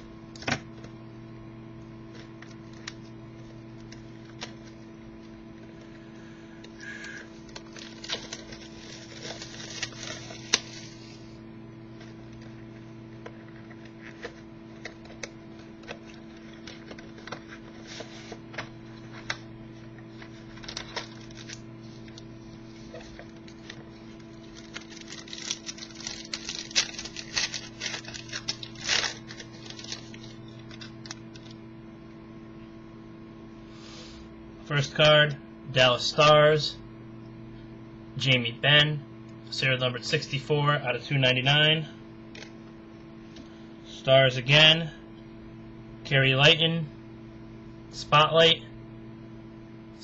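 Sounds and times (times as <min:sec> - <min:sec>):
steady electrical hum: 0:00.0 - 0:50.0
cardboard and wrapper rustling: 0:07.4 - 0:11.2, 0:13.4 - 0:19.4, 0:20.0 - 0:31.6.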